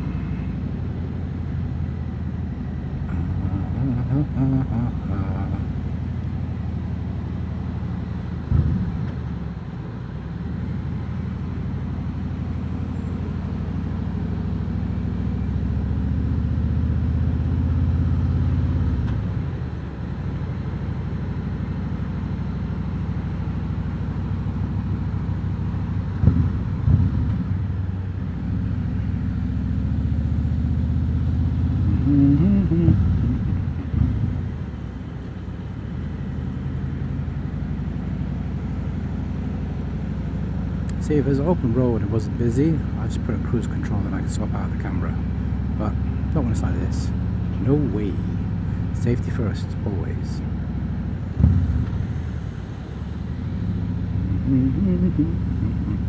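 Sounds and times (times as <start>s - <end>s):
motorcycle engine rumbling: 0.0s - 15.6s, 31.4s - 36.2s, 37.0s - 56.0s.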